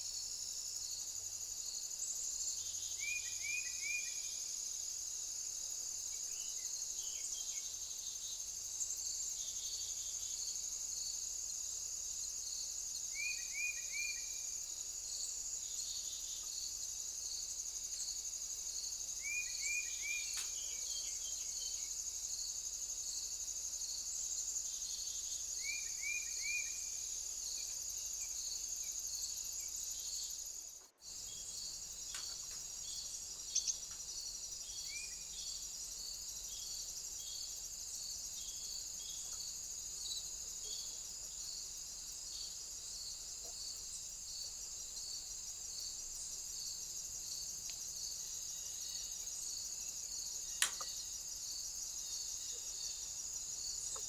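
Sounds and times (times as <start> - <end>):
cricket chirps: 0.0 - 54.0
insect trill: 0.0 - 54.0
bird chirps: 31.1 - 34.0.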